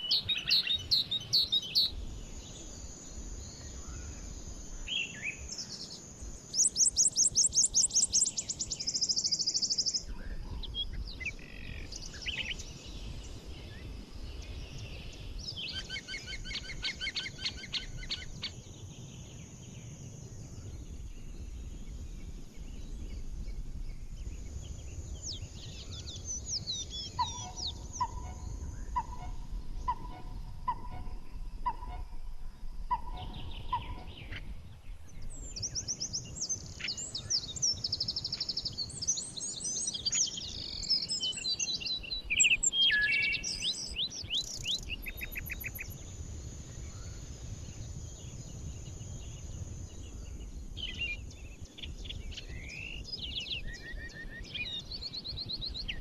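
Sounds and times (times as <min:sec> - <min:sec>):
birds singing and calling: 0:00.0 - 0:56.0
steady high hiss: 0:31.2 - 0:54.0.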